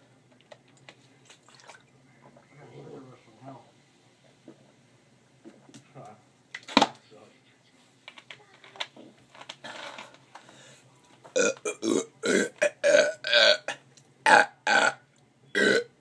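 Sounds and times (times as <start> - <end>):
person burping loudly: 11.4 - 16.0.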